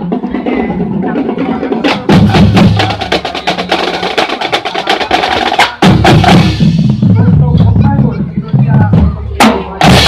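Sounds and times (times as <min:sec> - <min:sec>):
sharp drum and block strikes: 0:01.9 - 0:10.0.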